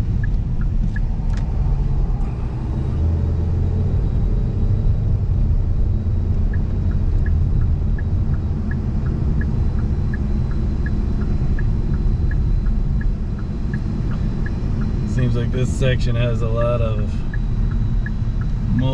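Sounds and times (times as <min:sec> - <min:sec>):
car engine and road rumble: 0:00.0 - 0:18.9
ticking clicks: 0:06.4 - 0:18.9.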